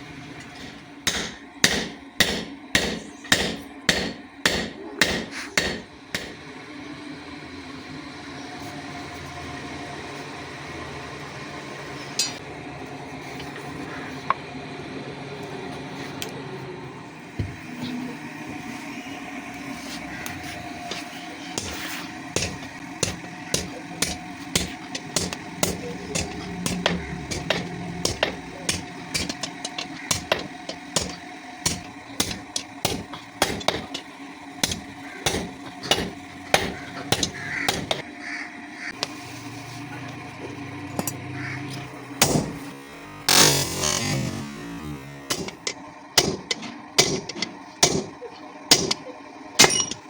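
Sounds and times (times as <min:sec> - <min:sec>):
steady background hum: 0:00.0 - 0:50.0
hammer striking steel on anvil: 0:01.0 - 0:06.4, 0:12.2 - 0:12.4, 0:21.5 - 0:38.0, 0:42.2 - 0:42.6, 0:45.3 - 0:50.0.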